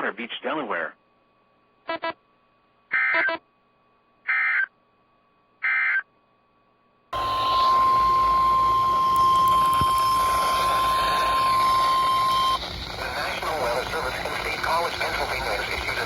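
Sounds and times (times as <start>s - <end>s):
digital data bursts: 7.2s - 16.0s
static hiss: 7.2s - 16.0s.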